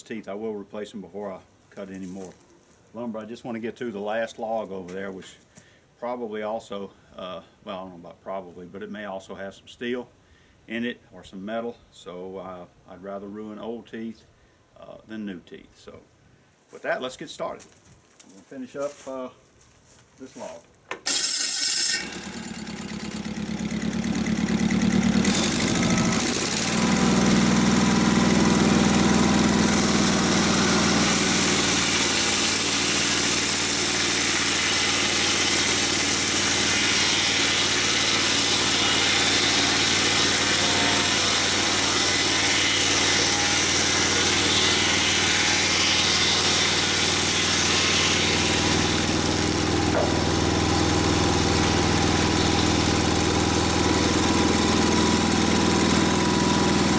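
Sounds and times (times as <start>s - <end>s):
sawmill engine running: 21.1s - 56.9s.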